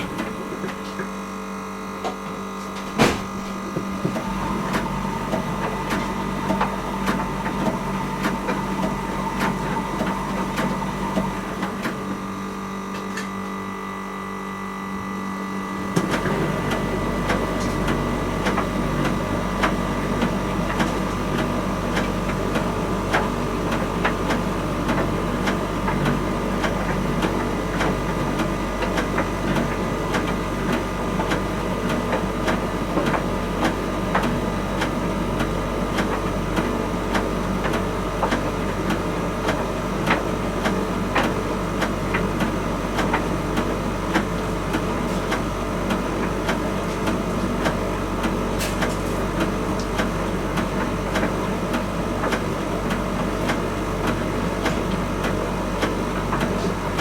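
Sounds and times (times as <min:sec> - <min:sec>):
tumble dryer humming: 0:00.0 - 0:57.0
dryer drum knocks: 0:02.8 - 0:12.1.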